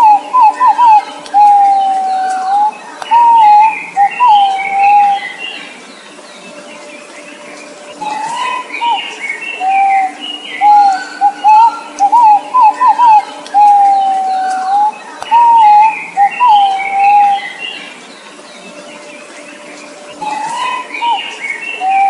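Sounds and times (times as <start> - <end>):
bird whistling: 0.0 - 5.7, 7.9 - 17.9, 20.1 - 22.0.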